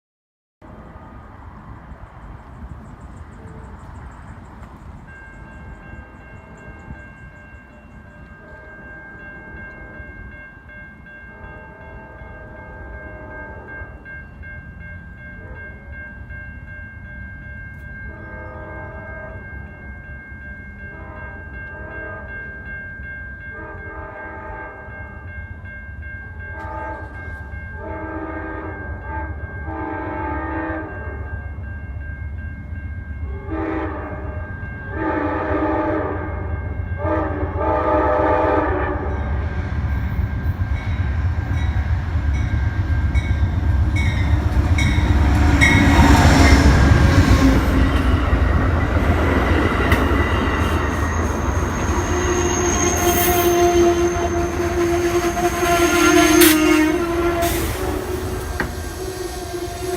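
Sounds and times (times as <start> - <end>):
locomotive air horn blasts: 18.1 - 19.5, 20.9 - 22.5, 23.5 - 24.9, 26.6 - 31.3, 33.4 - 39.3, 50.3 - 59.9
locomotive engine and wheel rumble: 38.8 - 59.9
wheels clacking over rail joints: 44.0 - 52.9
brakes squealing: 50.0 - 59.9.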